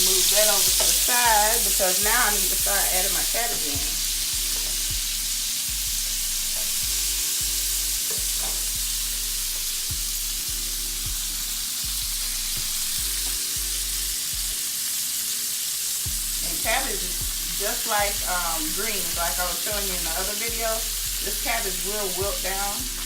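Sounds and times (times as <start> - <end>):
food sizzling in a frying pan: 0.0 - 23.0.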